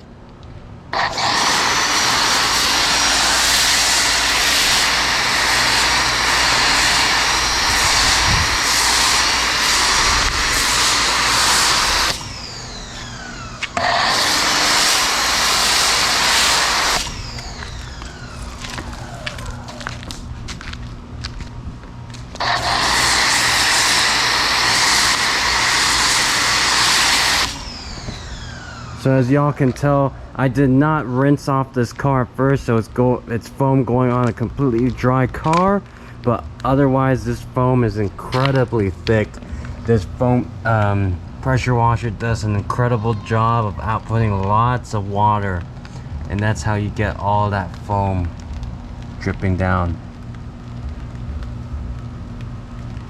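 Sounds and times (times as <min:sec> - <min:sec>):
pressure washer motor humming: 0:00.9 - 0:20.4, 0:22.3 - 0:30.0
pressure washer spray hissing: 0:01.0 - 0:13.0, 0:13.6 - 0:19.8, 0:22.4 - 0:28.1
low hum: 0:14.9 - 0:26.7.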